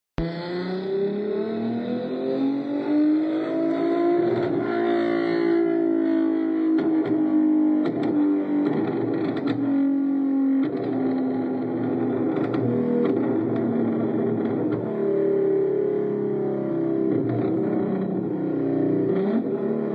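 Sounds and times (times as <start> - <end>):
car engine accelerating: 0.2 - 19.9.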